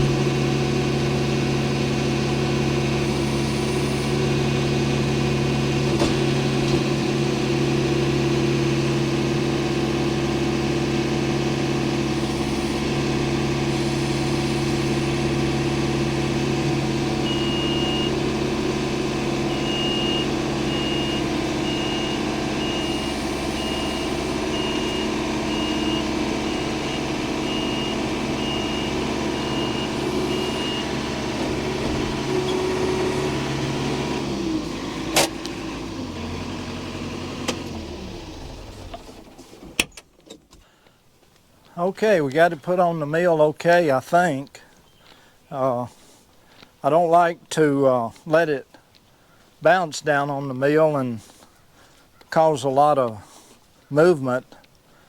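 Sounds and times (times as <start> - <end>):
engine running: 0.0 - 40.0
high beep: 17.2 - 18.2, 19.5 - 31.0.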